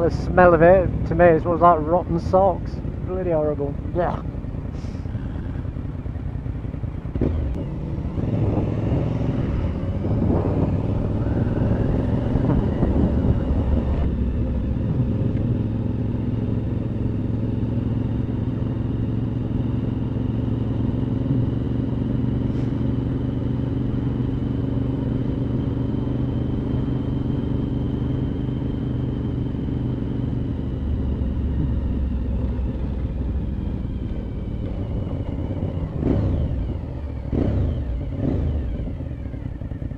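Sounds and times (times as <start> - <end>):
motorcycle engine revving: 0.0 - 39.9
wind noise: 7.1 - 15.7.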